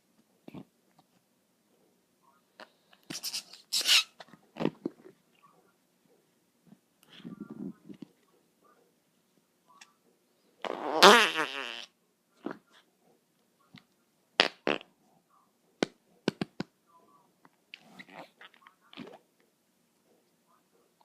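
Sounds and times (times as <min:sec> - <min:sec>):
fart sound: 0:10.6 - 0:12.0, 0:14.4 - 0:14.9.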